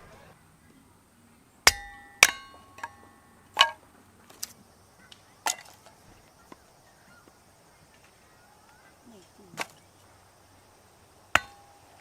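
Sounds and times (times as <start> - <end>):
sharp metal strikes ringing: 1.6 - 3.8, 11.4 - 11.9.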